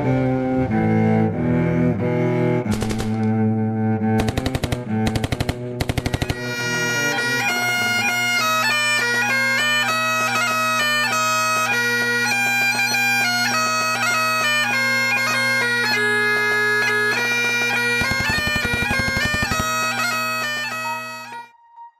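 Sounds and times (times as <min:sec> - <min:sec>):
bagpipe tune over drone: 0:00.0 - 0:21.9
rapid machine-gun fire: 0:02.7 - 0:03.4, 0:04.2 - 0:06.4, 0:18.0 - 0:20.0.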